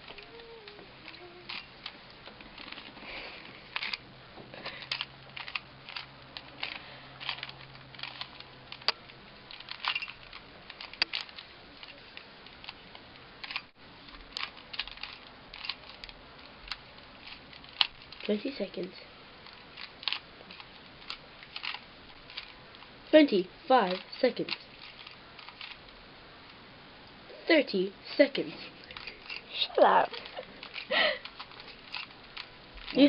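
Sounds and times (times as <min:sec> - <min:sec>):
plastic puzzle cube clicking: 0:03.7 - 0:04.0, 0:04.7 - 0:12.8, 0:13.4 - 0:18.3, 0:19.4 - 0:22.5, 0:23.9 - 0:25.9, 0:30.3 - 0:33.0.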